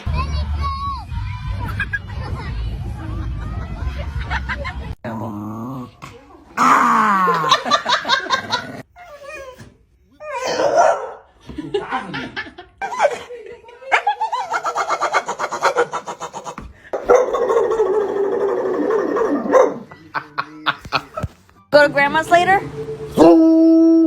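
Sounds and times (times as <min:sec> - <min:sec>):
people laughing: 0:01.6 - 0:05.0, 0:06.8 - 0:08.9, 0:11.4 - 0:21.3.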